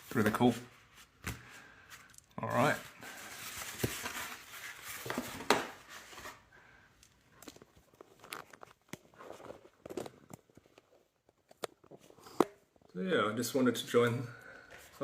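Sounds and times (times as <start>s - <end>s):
paper rustling and crinkling: 0.0s - 6.5s, 7.3s - 10.2s.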